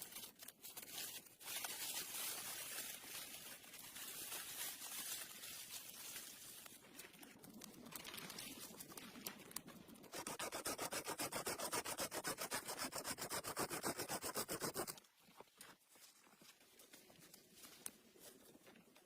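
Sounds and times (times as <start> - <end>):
fast rubbing strokes: 10.1 - 15.0.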